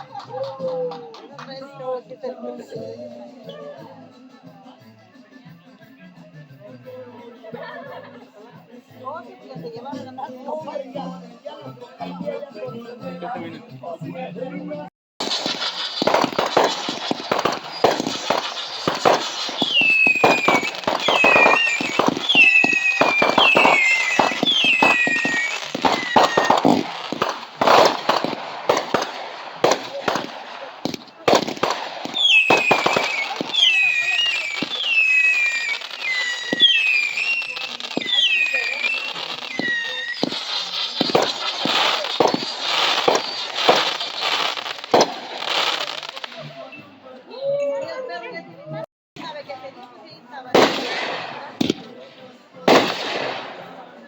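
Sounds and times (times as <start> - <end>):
fireworks whistles sliding down: 15.2 - 46.7
fireworks bangs and crackles: 15.2 - 46.8, 49.2 - 54.0.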